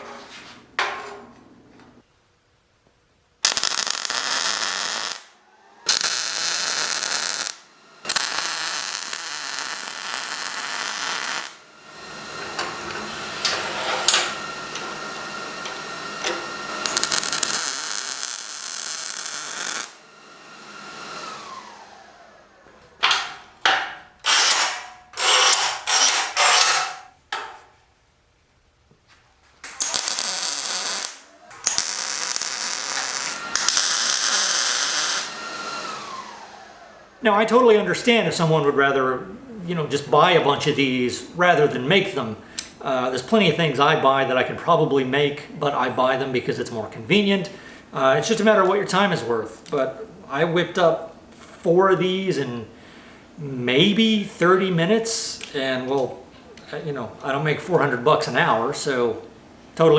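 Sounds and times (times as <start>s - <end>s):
motor-driven tool whining: 24.3s - 27.0s, 29.8s - 37.1s.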